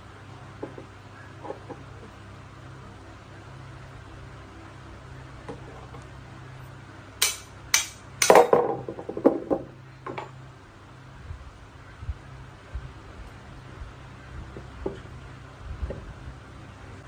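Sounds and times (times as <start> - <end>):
steady low hum: 0.0 - 17.0
sharp knocks on metal: 7.2 - 10.2.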